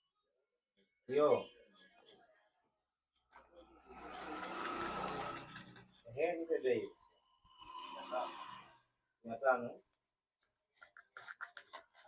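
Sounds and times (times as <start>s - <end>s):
brush scrubbing circuit board: 3.8s - 8.8s, 9.4s - 12.0s.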